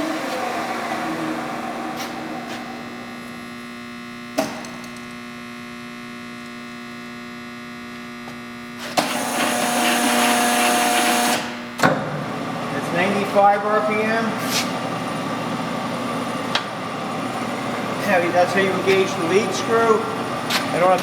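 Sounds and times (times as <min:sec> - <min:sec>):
lathe headstock running: 0:00.0 - 0:03.6
steady motor hum: 0:00.0 - 0:21.0.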